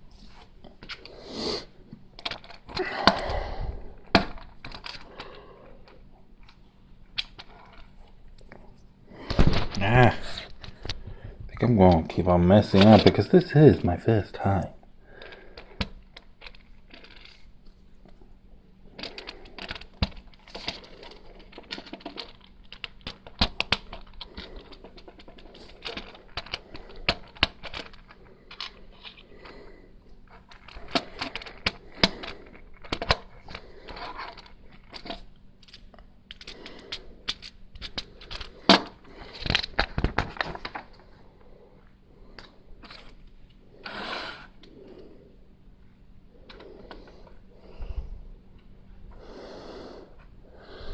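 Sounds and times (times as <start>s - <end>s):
plastic bricks clicking and rattling: 14.6s - 17.4s, 19.0s - 29.2s, 30.3s - 41.0s.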